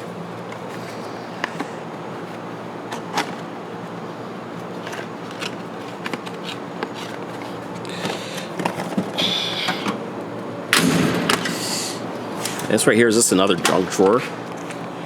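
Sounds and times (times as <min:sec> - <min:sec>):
metallic rattling and sliding: 0:10.8 - 0:14.4.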